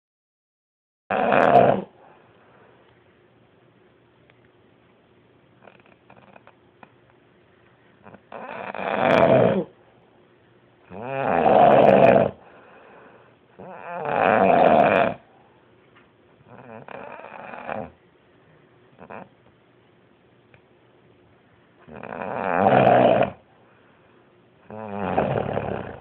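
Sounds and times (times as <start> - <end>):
loud snoring: 1.1 - 1.9, 8.0 - 9.7, 10.9 - 12.4, 13.6 - 15.3, 16.5 - 18.0, 21.9 - 23.4, 24.7 - 26.0.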